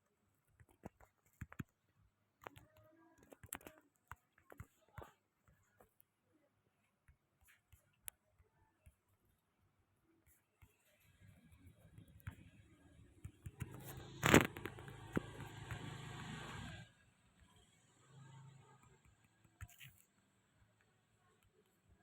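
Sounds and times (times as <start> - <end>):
faint clicks and light taps: 0.1 - 9.5, 10.2 - 15.9.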